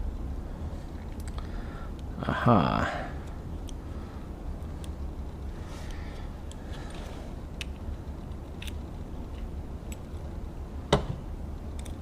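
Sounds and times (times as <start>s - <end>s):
steady low hum: 0.0s - 12.0s
small metal parts clicking: 7.6s - 10.2s.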